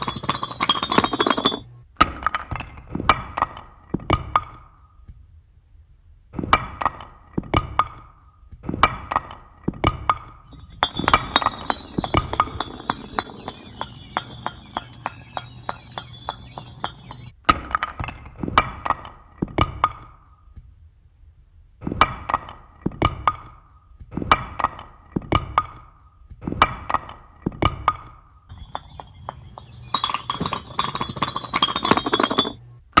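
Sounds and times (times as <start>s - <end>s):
bricks clacking together: 0.0s - 1.8s, 10.5s - 14.9s, 28.5s - 32.8s
high chime tones: 0.0s - 1.8s, 10.5s - 17.3s, 28.5s - 32.8s.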